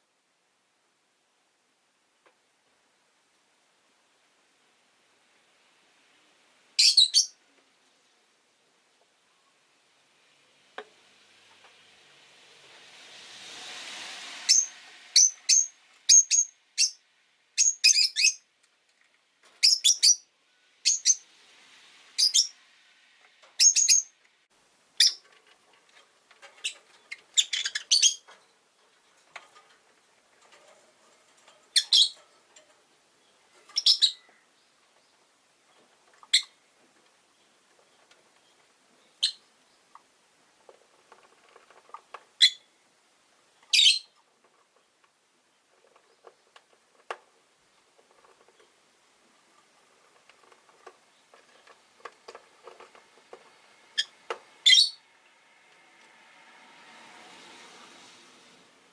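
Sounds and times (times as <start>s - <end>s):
lovebirds high-pitched chirps: 6.8s - 7.4s, 14.5s - 17.0s, 17.6s - 18.5s, 19.6s - 21.2s, 22.2s - 22.6s, 23.6s - 24.1s, 25.0s - 25.2s, 26.6s - 28.3s, 31.7s - 32.2s, 33.6s - 34.4s, 36.3s - 36.6s, 39.0s - 39.5s, 42.4s - 42.7s, 43.7s - 44.2s, 54.0s - 55.0s
rising rush of noise: 11.0s - 16.1s, 53.1s - 58.9s.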